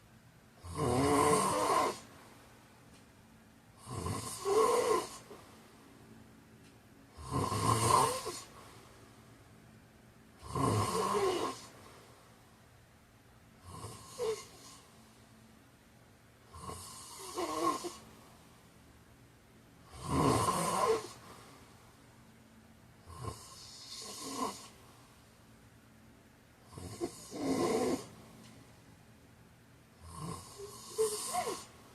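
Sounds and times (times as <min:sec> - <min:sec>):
man snoring: 0:00.6 - 0:02.1, 0:03.8 - 0:05.4, 0:07.1 - 0:08.5, 0:10.4 - 0:11.8, 0:13.6 - 0:14.8, 0:16.5 - 0:18.0, 0:19.8 - 0:21.3, 0:23.0 - 0:24.8, 0:26.7 - 0:28.1, 0:30.0 - 0:31.8.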